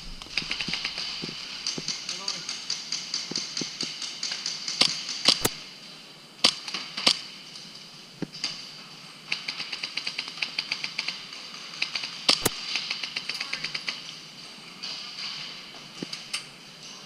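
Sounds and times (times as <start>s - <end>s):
rapid clicks: 0.0s - 5.6s, 9.3s - 14.2s
airsoft guns firing: 0.0s - 5.7s, 6.4s - 7.4s, 9.3s - 14.1s.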